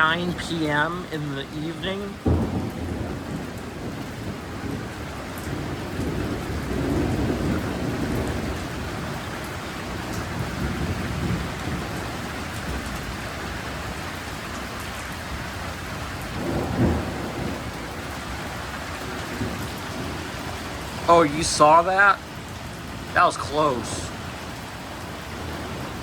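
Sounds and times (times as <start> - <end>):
thunder clap: 0.0 - 13.5, 16.3 - 22.2
thunder rumbling: 0.0 - 14.3, 15.3 - 24.6
steady rain: 0.0 - 26.0.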